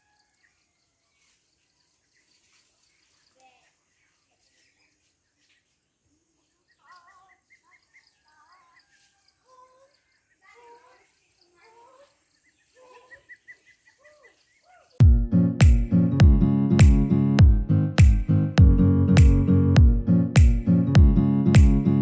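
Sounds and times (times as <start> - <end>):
birds chirping: 0.4 - 15.0
acoustic guitar music: 15.0 - 22.0.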